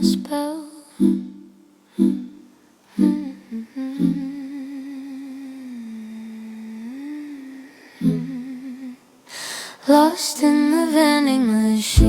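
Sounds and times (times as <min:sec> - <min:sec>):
person humming a melody: 0:00.0 - 0:09.0.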